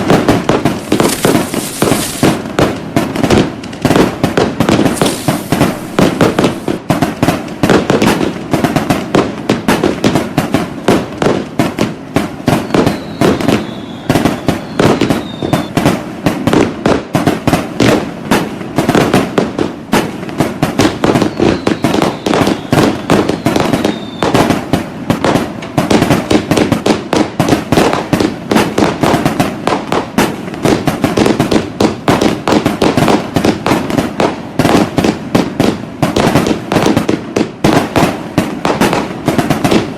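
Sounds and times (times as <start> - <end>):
falling firework whistles: 0.0 - 2.5, 4.7 - 6.8, 12.4 - 15.9, 20.8 - 24.7
fireworks and firecrackers banging: 0.0 - 39.9.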